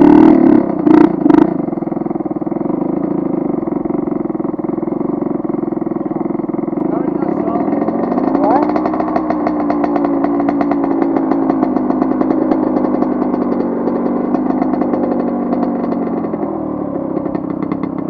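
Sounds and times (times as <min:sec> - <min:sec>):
dirt bike engine revving: 0:00.0 - 0:18.0.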